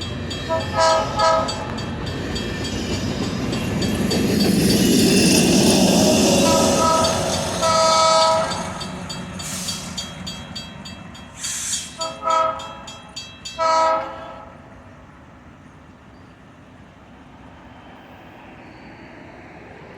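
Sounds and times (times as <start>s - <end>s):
train rumble: 0.0s - 19.9s
locomotive horn blasts: 0.5s - 1.7s, 6.4s - 8.8s, 12.0s - 12.9s, 13.6s - 14.6s
hissing bursts: 11.4s - 12.0s.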